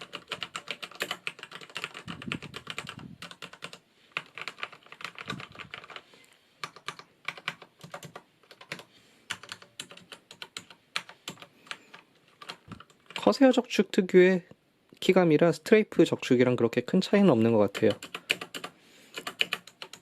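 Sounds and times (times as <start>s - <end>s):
mechanical keyboard typing: 0.0s - 6.0s, 6.6s - 13.3s, 17.7s - 20.0s.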